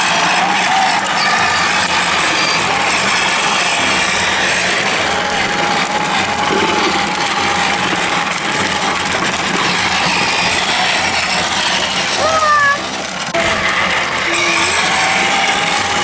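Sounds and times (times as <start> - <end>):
rumbling noise: 2.1 - 14.3
child's short vocal sound: 12.2 - 12.9.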